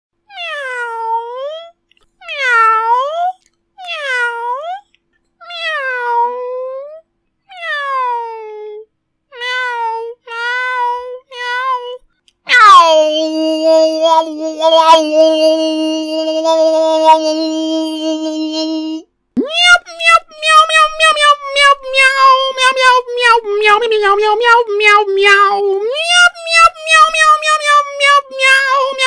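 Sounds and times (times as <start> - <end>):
cat meowing: 0.3 - 4.8, 5.4 - 8.3, 19.4 - 29.0.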